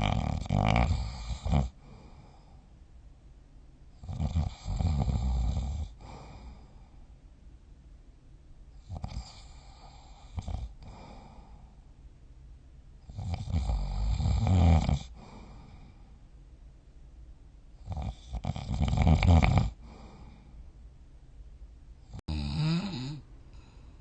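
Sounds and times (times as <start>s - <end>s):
person snoring: 0.0s - 2.5s, 4.0s - 6.6s, 13.1s - 15.9s, 17.8s - 20.4s, 22.1s - 23.8s.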